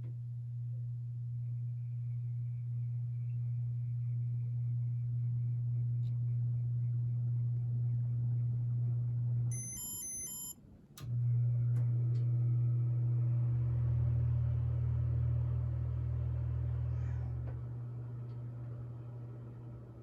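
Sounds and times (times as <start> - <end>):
short electronic beeps: 9.5 - 10.6
click: 11.0 - 12.3.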